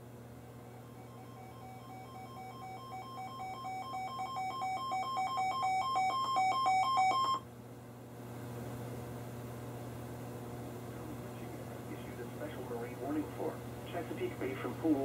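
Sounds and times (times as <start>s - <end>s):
two-tone electronic alert alarm: 0.8s - 7.4s.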